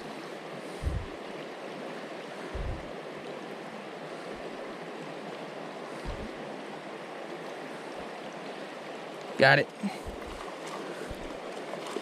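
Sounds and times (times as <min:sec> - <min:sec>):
creek water rushing: 0:00.0 - 0:12.0
dull low bumps: 0:00.8 - 0:01.2, 0:02.5 - 0:02.9, 0:06.0 - 0:06.4, 0:09.9 - 0:11.4.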